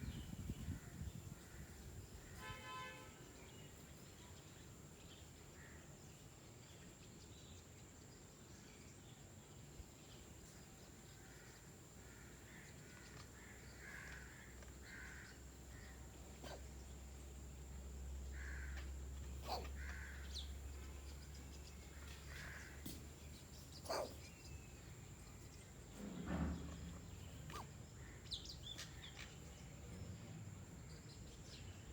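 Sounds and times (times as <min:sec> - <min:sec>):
cat coughing: 0:19.4 - 0:19.7.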